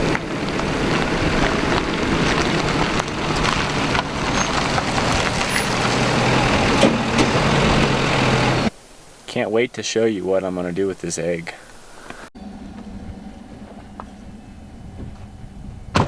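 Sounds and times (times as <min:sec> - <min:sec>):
vehicle engine humming: 0:00.0 - 0:08.7.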